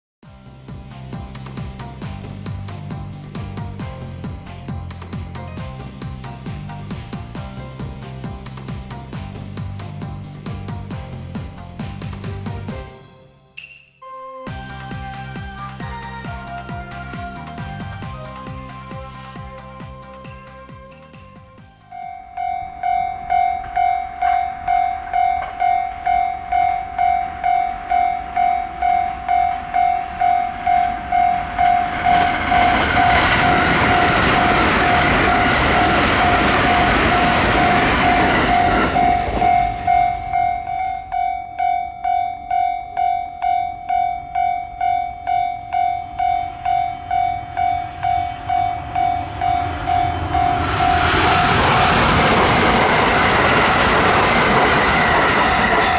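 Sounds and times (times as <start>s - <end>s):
train wheels rushing on rails: 0.3s - 13.0s, 14.5s - 55.9s
level crossing warning bell: 21.8s - 50.8s.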